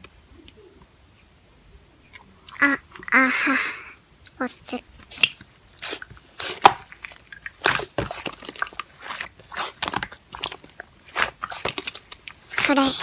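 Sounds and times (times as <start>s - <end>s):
slime squished by hand: 5.0s - 13.0s.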